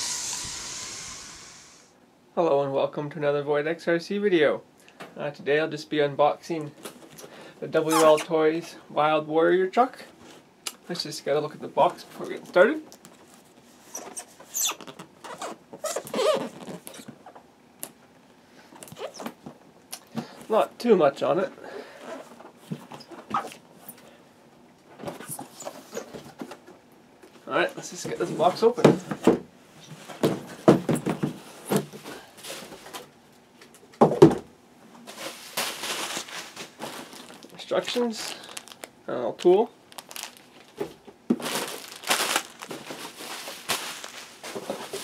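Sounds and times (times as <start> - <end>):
squeaky rub: 13.8 - 17.1.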